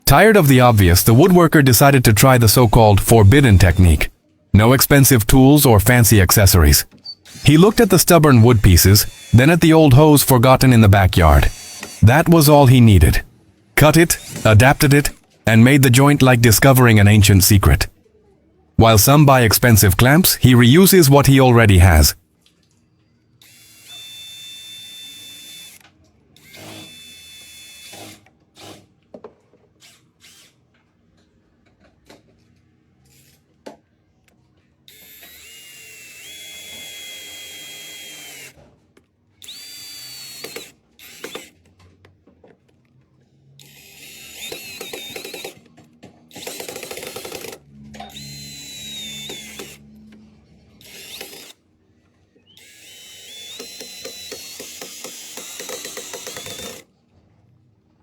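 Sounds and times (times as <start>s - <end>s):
power drill whining: 6.9s - 13.2s, 13.8s - 15.2s, 23.4s - 28.8s, 29.8s - 30.6s, 34.9s - 38.6s, 39.4s - 41.7s, 43.6s - 45.7s, 46.3s - 51.6s, 52.4s - 56.9s.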